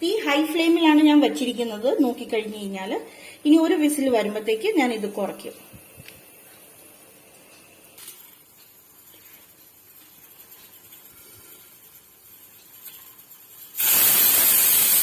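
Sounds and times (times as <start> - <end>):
pressure cooker hissing: 13.6 - 15.0
pressure cooker whistle: 13.8 - 15.0.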